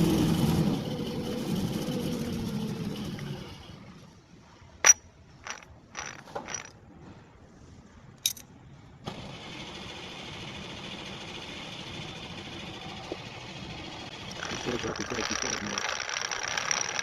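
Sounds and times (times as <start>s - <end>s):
metal tools clinking and scraping: 4.8s - 6.8s, 8.2s - 8.5s.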